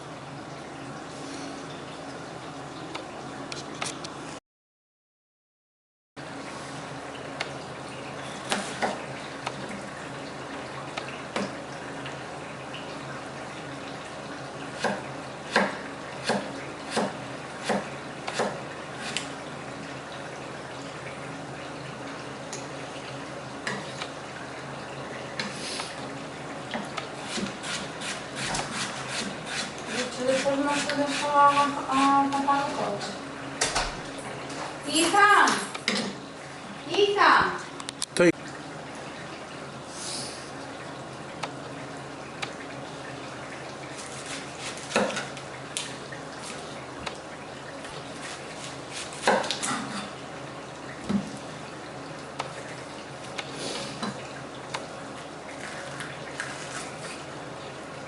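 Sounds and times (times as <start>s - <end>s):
water running from tap: 6.8s - 37.8s.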